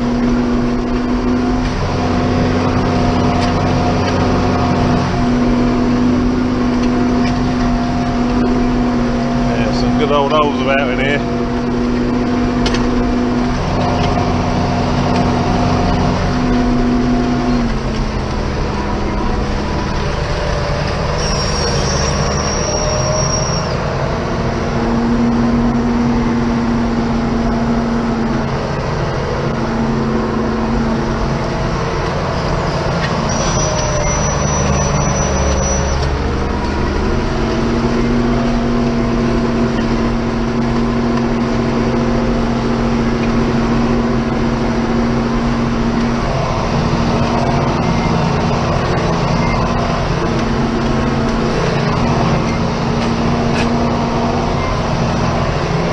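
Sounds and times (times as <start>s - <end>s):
diesel tractor engine under load: 0.0s - 55.9s
thin high whistle: 21.2s - 23.8s, 33.3s - 36.0s.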